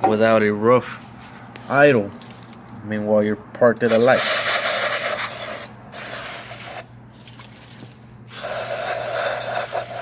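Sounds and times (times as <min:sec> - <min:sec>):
aerosol spray hissing: 0:03.9 - 0:06.8, 0:08.3 - 0:10.0.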